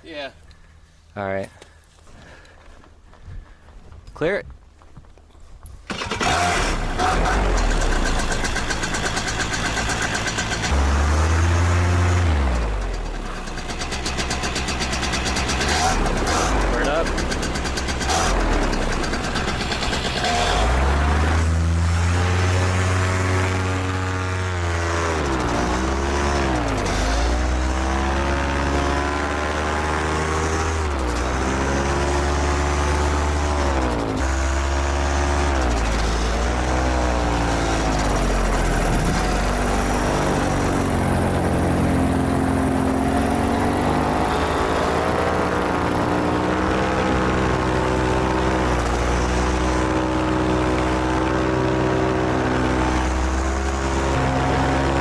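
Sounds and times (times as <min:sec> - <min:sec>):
paramotor engine in flight: 0:05.9 - 0:55.0.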